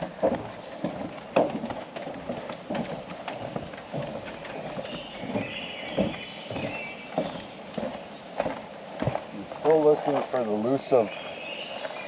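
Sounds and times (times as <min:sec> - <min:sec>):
footsteps on a trail: 0:00.0 - 0:12.0.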